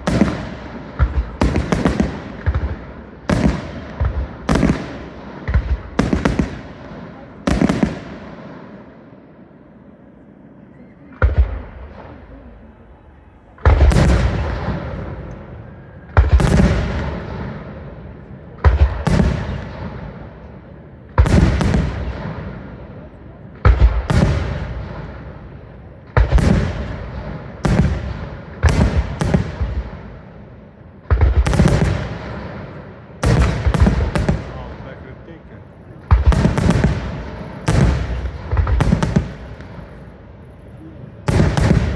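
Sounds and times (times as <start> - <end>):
fireworks bangs: 0.0 - 10.2, 10.8 - 41.9.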